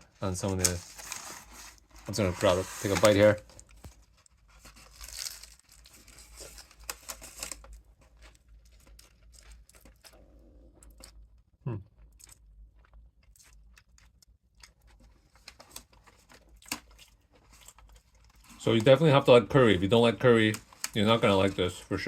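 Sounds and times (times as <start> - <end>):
crunchy chewing: 3.6 - 18.6.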